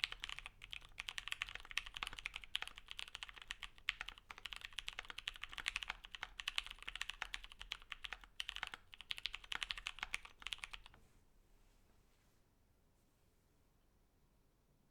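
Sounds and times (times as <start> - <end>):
keyboard typing: 0.0 - 11.0.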